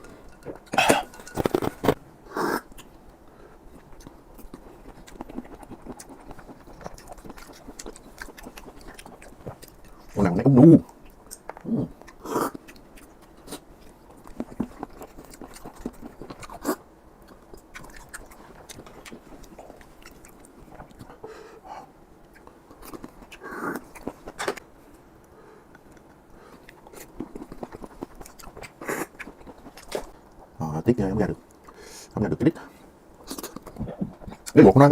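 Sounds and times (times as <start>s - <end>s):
chewing and biting: 3.8s - 21.1s, 22.3s - 24.6s, 25.8s - 30.5s, 33.2s - 34.6s.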